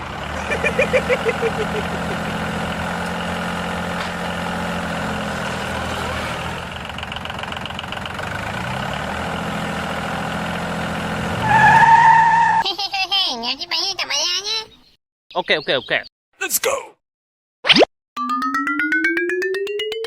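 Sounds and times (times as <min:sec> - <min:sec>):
engine idling: 0:06.6 - 0:08.6.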